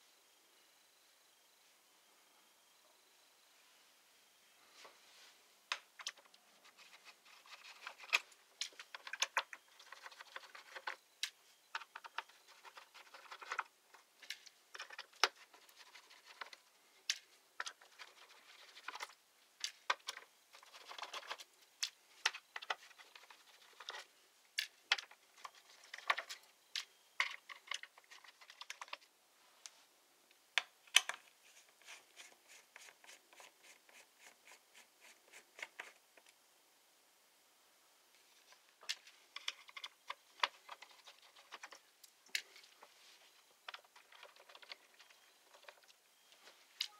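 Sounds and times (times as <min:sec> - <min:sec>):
small tools scraping plastic: 0:06.0 - 0:29.1, 0:31.0 - 0:36.3, 0:38.4 - 0:46.9.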